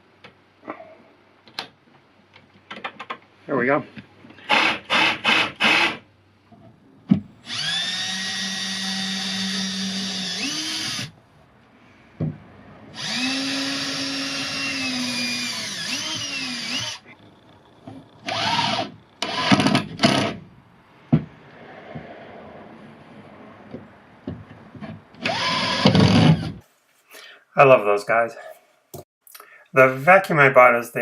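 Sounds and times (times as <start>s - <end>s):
jig saw motor running: 4.5s - 6.0s, 7.4s - 11.1s, 12.9s - 17.1s, 18.2s - 20.2s, 25.2s - 26.5s.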